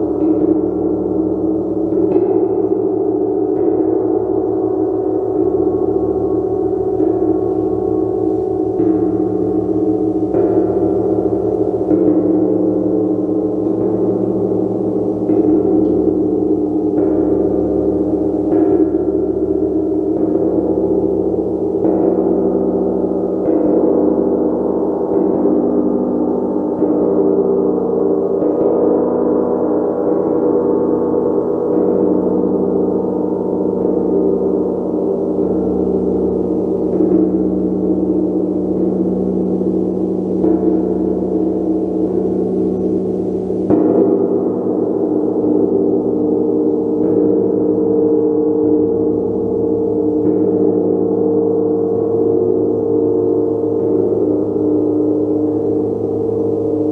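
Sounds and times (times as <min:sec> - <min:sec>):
gong ringing: 0:33.4 - 0:45.0.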